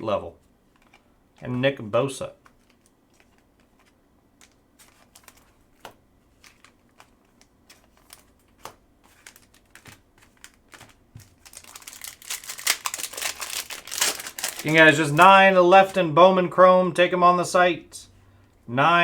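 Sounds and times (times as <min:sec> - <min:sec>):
cards clicking and tapping: 0:02.4 - 0:13.4
foil wrapper crinkling: 0:02.4 - 0:16.0.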